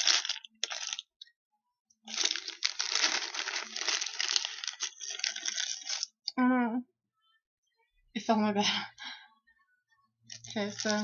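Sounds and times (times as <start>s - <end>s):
plastic snack pouch crinkling: 0.0s - 1.3s, 2.0s - 6.3s, 10.3s - 11.0s.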